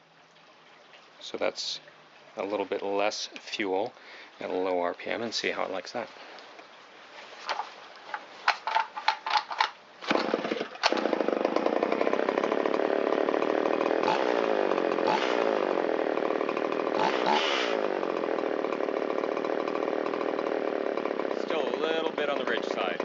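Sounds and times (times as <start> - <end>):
chainsaw engine idling: 10.0 - 23.0.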